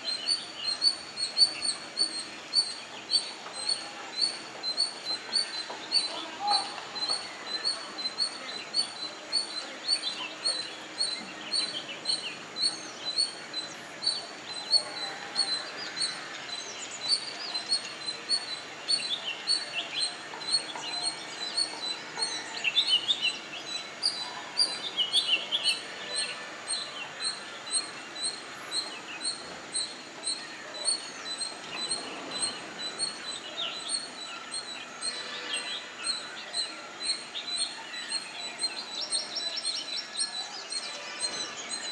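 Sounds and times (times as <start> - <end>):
other birds chirping: 0.1 - 41.9.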